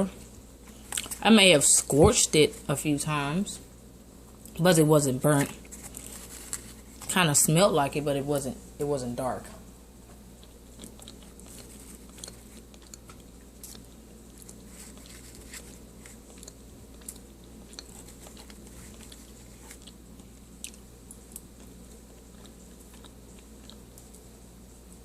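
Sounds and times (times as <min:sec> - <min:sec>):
low steady hum: 0:00.0 - 0:25.0
crunchy chewing: 0:00.6 - 0:01.2, 0:05.6 - 0:07.1, 0:10.3 - 0:24.3.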